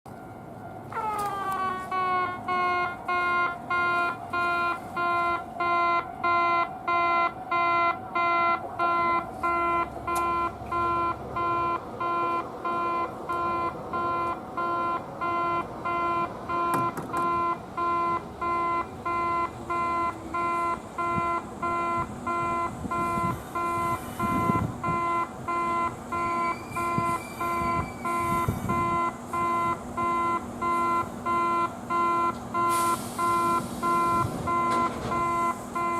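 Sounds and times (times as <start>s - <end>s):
train rumble: 0.1s - 35.9s
level crossing alarm ringing: 0.2s - 35.9s
rising squeal: 26.2s - 28.8s.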